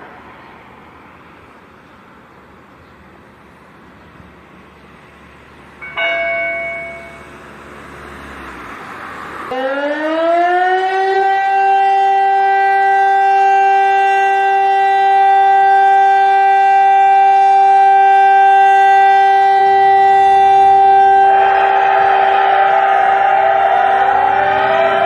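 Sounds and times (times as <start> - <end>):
siren steady tone: 5.8 - 7.6, 9.4 - 25.0
rising siren tone: 9.4 - 25.0
rushing sound: 19.6 - 25.0.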